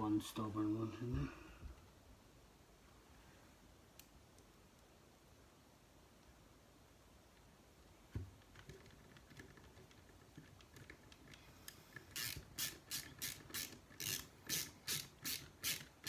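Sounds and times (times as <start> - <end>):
hand tool ratcheting clicks: 12.0 - 15.9.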